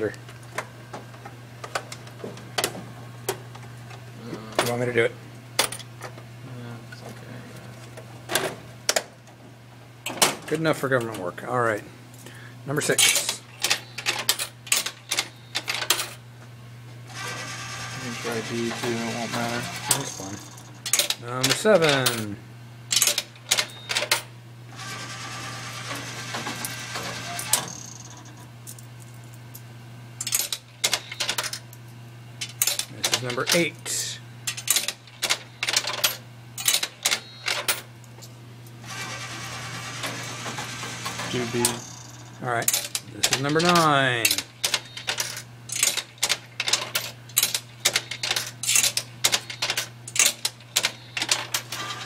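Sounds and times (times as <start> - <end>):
steady low hum: 0.0 - 52.0
vend motor ratcheting whir: 17.1 - 22.1, 24.7 - 28.4, 38.8 - 52.0
vending machine clicks: 38.9 - 52.0.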